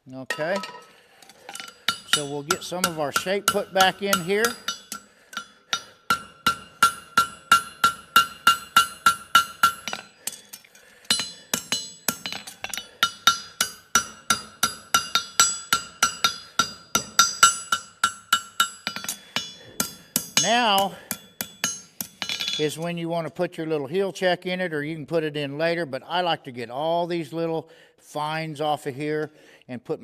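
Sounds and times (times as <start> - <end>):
hammer striking horseshoe on anvil: 0.3 - 0.9, 1.5 - 22.8.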